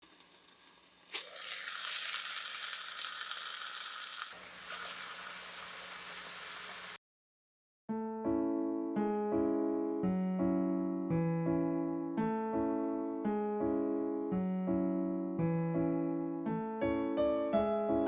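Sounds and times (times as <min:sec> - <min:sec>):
dumplings sizzling in frying pan: 0:00.0 - 0:07.0
piano music: 0:07.9 - 0:18.0.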